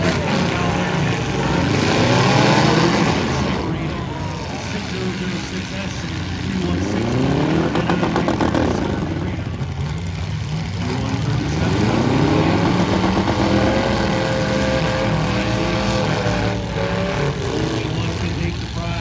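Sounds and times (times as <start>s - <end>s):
car engines revving: 0.0s - 19.0s.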